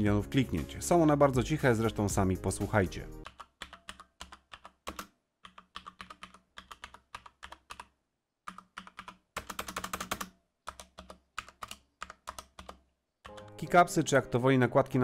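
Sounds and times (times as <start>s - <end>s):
quiet mechanical keyboard typing: 3.2s - 13.7s.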